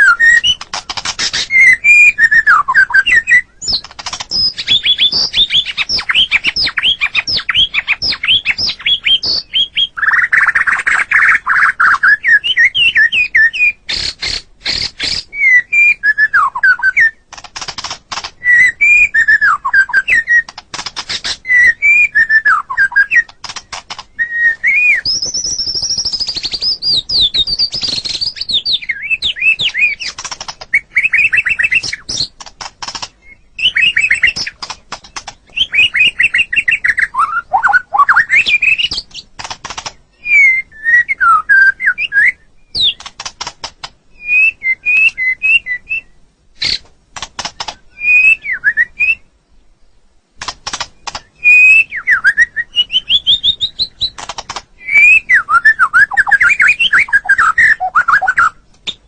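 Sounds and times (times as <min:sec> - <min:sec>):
bird singing whistled phrases: 0:00.0 - 0:00.6, 0:01.3 - 0:14.1, 0:14.7 - 0:17.2, 0:18.4 - 0:20.5, 0:21.4 - 0:23.3, 0:24.1 - 0:30.1, 0:30.7 - 0:32.3, 0:33.2 - 0:34.6, 0:35.5 - 0:39.1, 0:40.1 - 0:43.0, 0:44.2 - 0:46.8, 0:47.9 - 0:49.3, 0:51.3 - 0:54.2, 0:54.8 - 0:59.0
sharp bird clicks: 0:00.0 - 0:49.2, 0:50.4 - 0:59.0.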